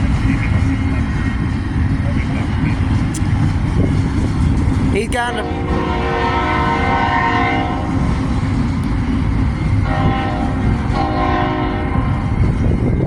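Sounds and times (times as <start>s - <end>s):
passing train rumble: 0.0s - 13.0s
locomotive horn blasts: 5.4s - 7.9s, 9.9s - 12.1s.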